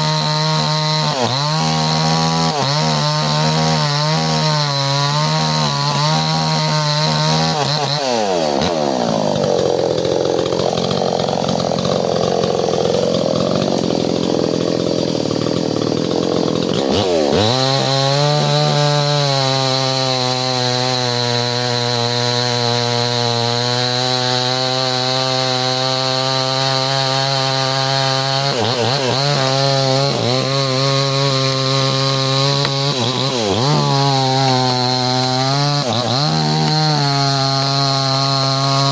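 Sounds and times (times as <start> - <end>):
chainsaw running and cutting wood: 0.0 - 38.9.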